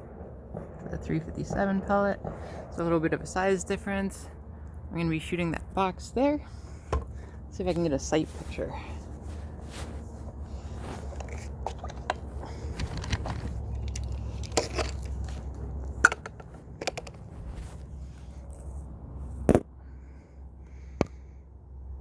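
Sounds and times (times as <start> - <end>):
low rumble: 0.0 - 22.0
handling rustling and scrapes: 6.5 - 19.6.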